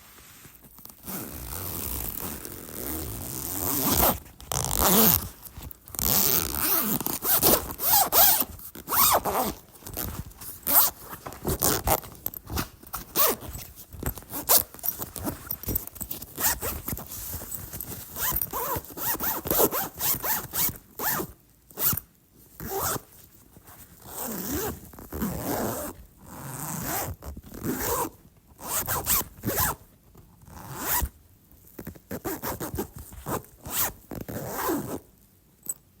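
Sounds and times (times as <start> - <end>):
bag zipper opening and closing: 1.0 - 22.0, 22.6 - 23.0, 24.0 - 29.8, 30.5 - 31.1, 32.1 - 35.0.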